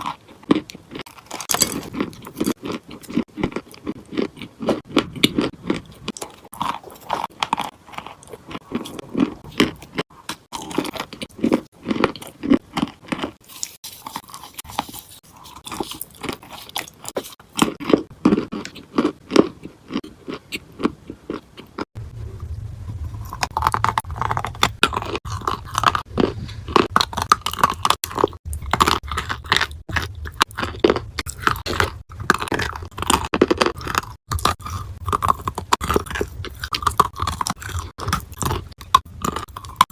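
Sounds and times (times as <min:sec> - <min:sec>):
crunching and chewing dry clay: 0:00.0 - 0:39.9
steady low hum: 0:22.0 - 0:39.9.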